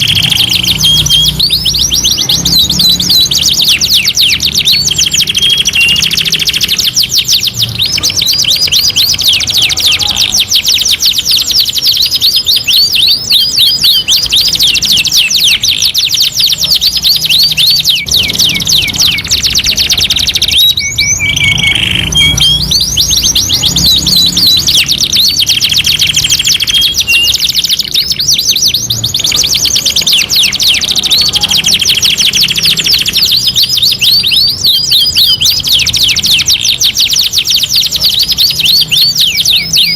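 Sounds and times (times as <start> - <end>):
canaries singing trills: 0.0 - 39.9.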